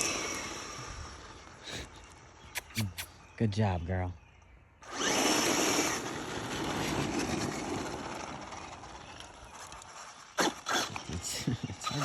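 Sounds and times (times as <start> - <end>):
short sharp sound: 2.6 - 3.1
rc truck electric motor: 4.9 - 8.9, 9.6 - 10.9.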